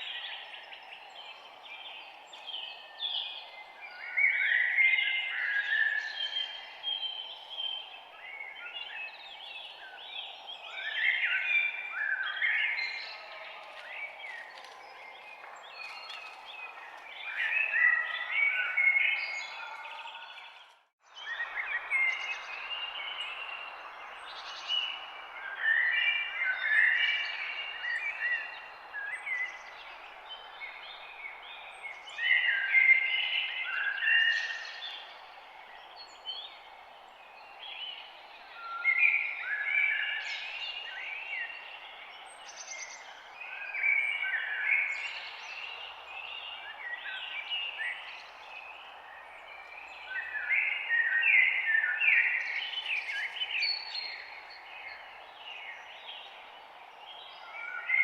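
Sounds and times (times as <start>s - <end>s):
birds chirping and singing: 0.0s - 35.2s.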